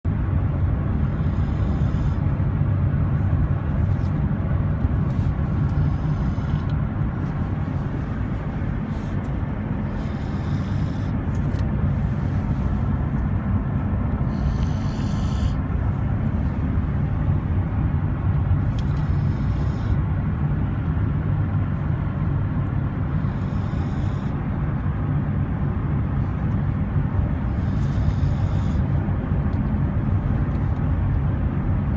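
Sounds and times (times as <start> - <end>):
dog snoring: 0.9 - 2.2, 5.3 - 6.8, 9.8 - 11.2, 14.2 - 15.6, 18.6 - 20.0, 23.1 - 24.4, 27.4 - 28.9.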